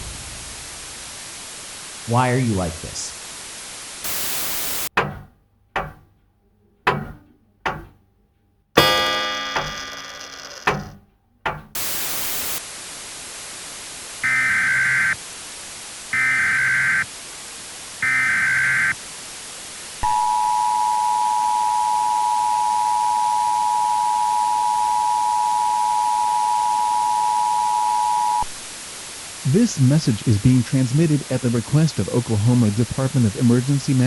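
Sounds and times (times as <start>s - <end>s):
radio hiss: 0.0s - 4.9s, 11.8s - 34.0s
burst of static: 0.0s - 5.0s, 8.8s - 10.9s, 11.8s - 34.0s
warbling data bursts: 4.0s - 4.9s, 11.8s - 12.6s
two-tone attention signal: 20.0s - 28.5s.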